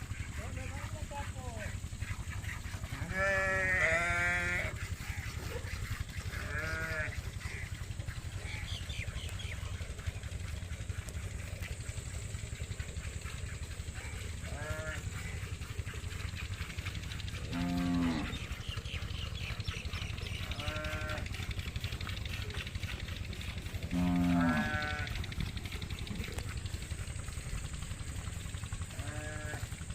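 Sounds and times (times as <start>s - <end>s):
steady low hum: 0.0s - 29.9s
livestock bleating: 3.0s - 4.7s, 6.4s - 7.2s, 14.5s - 15.0s, 20.6s - 21.2s, 23.9s - 25.1s, 28.9s - 29.7s.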